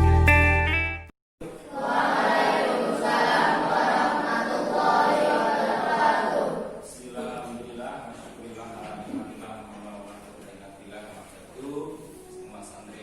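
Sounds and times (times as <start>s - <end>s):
guitar music: 0.0s - 1.1s
crowd shouting together: 1.7s - 6.8s.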